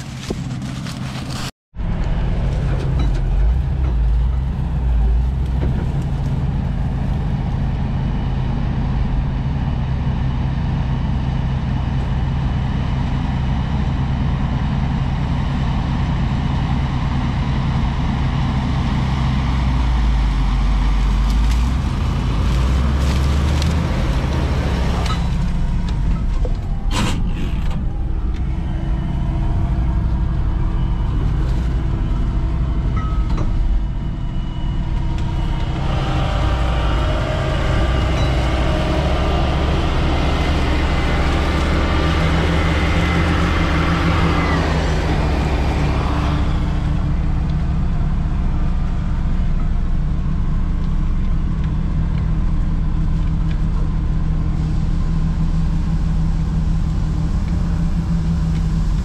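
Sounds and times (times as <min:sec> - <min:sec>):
truck engine drone: 0:00.0 - 0:59.0
hiss and whine: 0:12.0 - 0:59.0.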